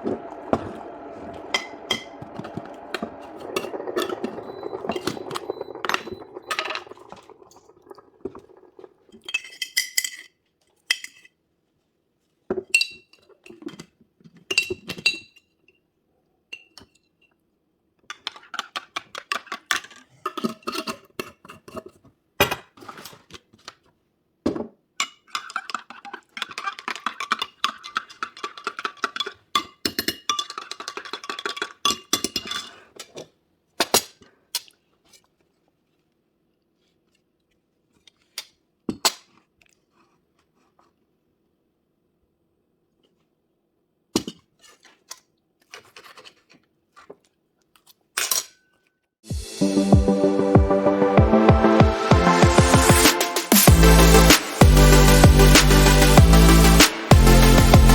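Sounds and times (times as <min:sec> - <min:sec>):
utensils clinking against dishes: 0:25.0 - 0:32.9.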